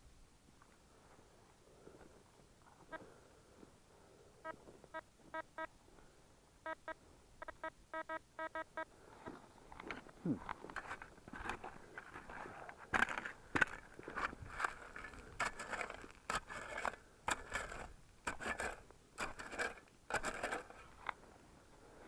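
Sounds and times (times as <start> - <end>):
metal detector beeping: 6.7 - 9.4
digging in gravel and dirt: 9.2 - 22.0.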